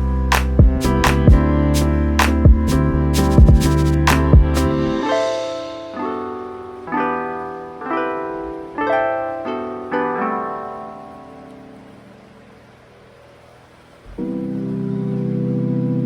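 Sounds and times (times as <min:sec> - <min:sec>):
soft ringing chords: 0:04.4 - 0:13.2.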